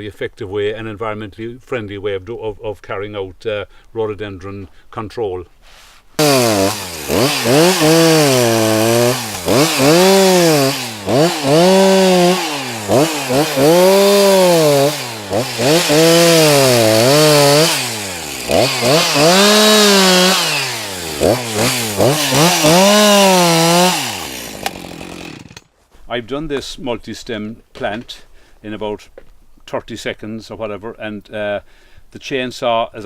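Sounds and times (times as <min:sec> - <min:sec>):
chainsaw revving and cutting: 0:06.2 - 0:25.7.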